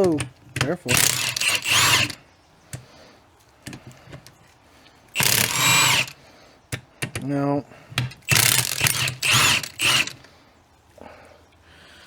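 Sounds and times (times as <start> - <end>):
power tool bursts: 0.9 - 2.2, 5.2 - 6.2, 8.2 - 10.3.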